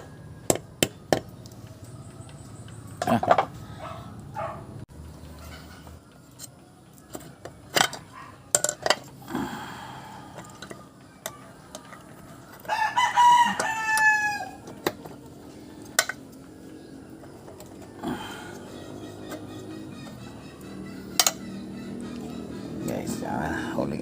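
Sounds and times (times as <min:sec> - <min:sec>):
rooster crowing: 0:11.4 - 0:14.7.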